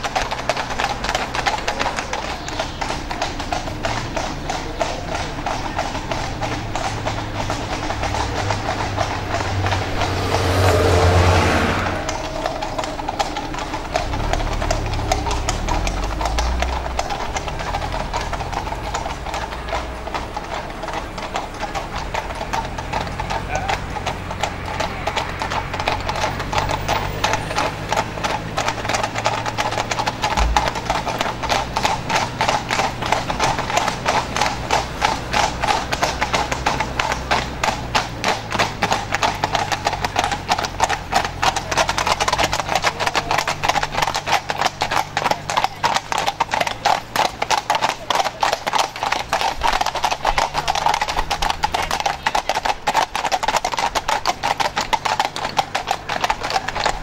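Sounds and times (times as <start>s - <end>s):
horse hooves clip-clopping: 0.0s - 57.0s.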